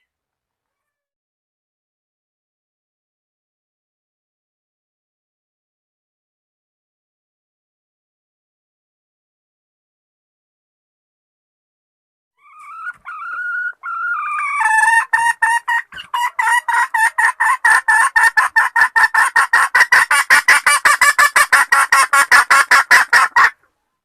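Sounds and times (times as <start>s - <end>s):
hen clucking rapidly: 12.4s - 23.7s.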